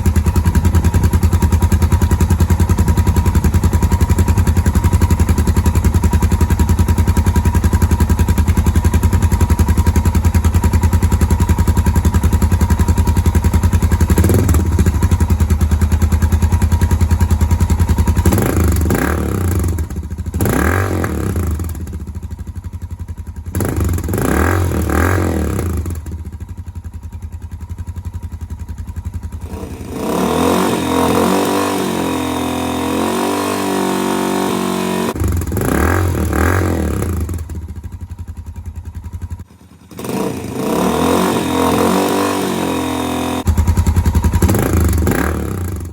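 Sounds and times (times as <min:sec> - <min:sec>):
motorcycle engine idling: 0:00.0 - 0:45.9
motorcycle engine revving: 0:00.0 - 0:45.9.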